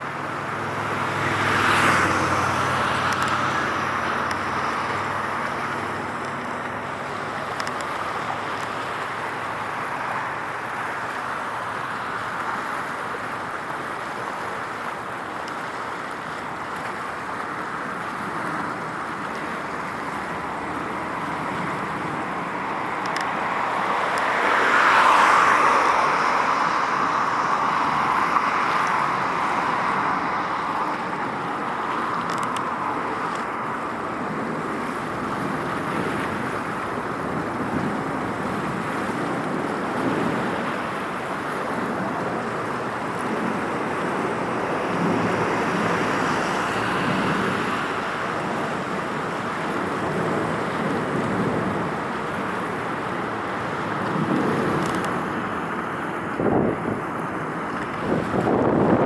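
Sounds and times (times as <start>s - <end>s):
traffic hum: 0.0s - 59.0s
car passing loudly: 0.5s - 6.6s, 19.8s - 34.4s.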